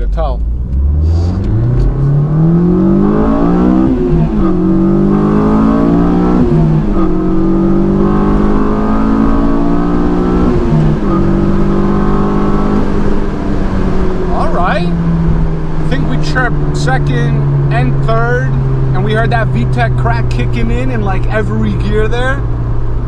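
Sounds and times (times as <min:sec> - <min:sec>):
car engine accelerating: 0:00.0 - 0:23.0.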